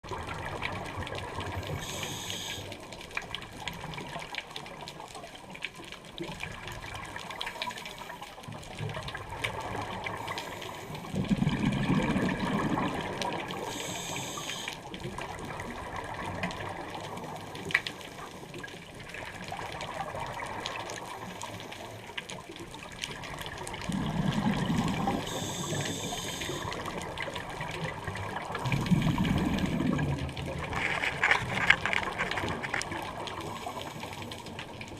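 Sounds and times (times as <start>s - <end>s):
exhaled bubbles rumbling: 0.0s - 2.2s, 8.4s - 34.9s
underwater noise: 0.0s - 34.9s
hissing regulator inhale: 1.8s - 2.8s, 13.6s - 14.9s, 25.0s - 26.8s
faint clicking: 12.8s - 24.0s, 24.6s - 34.9s.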